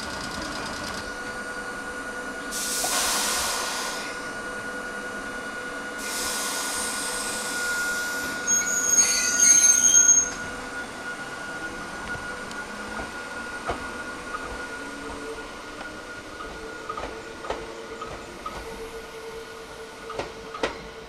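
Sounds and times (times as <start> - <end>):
electric train humming: 0.0 - 21.0
long air hisses: 2.4 - 4.7, 5.9 - 8.5
high-pitched wheel squeal: 7.5 - 11.6.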